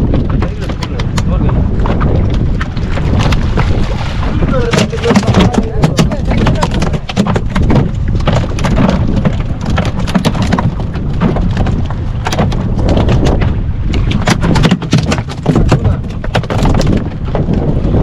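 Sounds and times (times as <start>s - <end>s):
wind buffeting microphone: 0.0s - 18.0s
sharp knocks and clatters: 4.5s - 17.6s.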